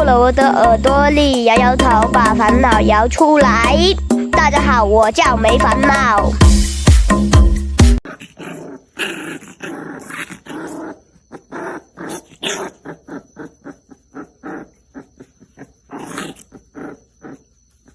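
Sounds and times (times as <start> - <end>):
dog growling: 8.0 - 17.9.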